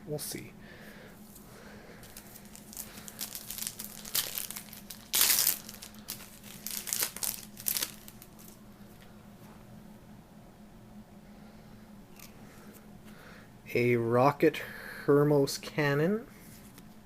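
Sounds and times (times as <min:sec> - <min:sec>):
foil wrapper crinkling and tearing: 0:02.0 - 0:08.6.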